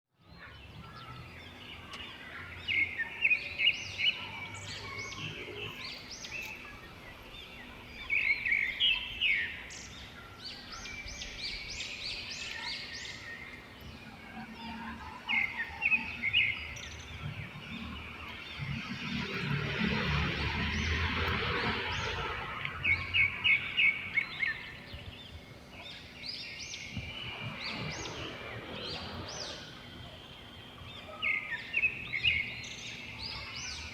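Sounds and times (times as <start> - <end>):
songbirds chirping: 0.1 - 33.9
outdoor background hiss: 0.4 - 33.9
broad rushing noise: 12.3 - 33.2.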